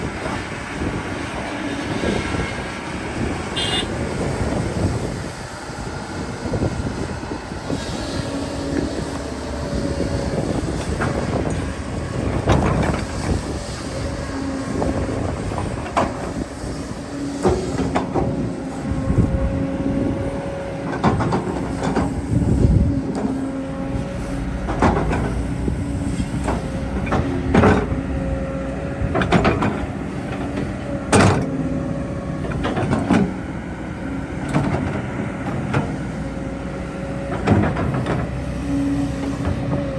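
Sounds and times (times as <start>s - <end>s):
diesel engine running: 0.0s - 39.9s
hydraulic whine: 0.8s - 39.9s
clanks and thuds: 10.7s - 13.6s, 14.8s - 16.7s, 17.4s - 18.6s, 20.8s - 23.4s, 24.6s - 28.0s, 29.1s - 31.6s, 32.4s - 33.4s, 34.4s - 36.1s, 37.3s - 38.4s.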